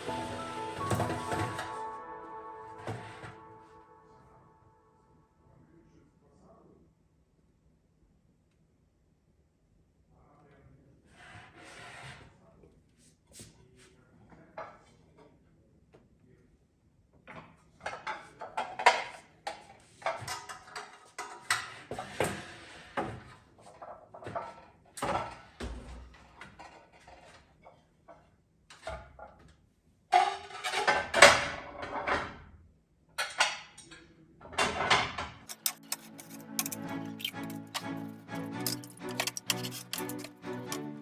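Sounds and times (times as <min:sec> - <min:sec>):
kitchen items clinking and clattering: 0:00.0 - 0:01.9, 0:30.1 - 0:32.3, 0:34.5 - 0:41.0.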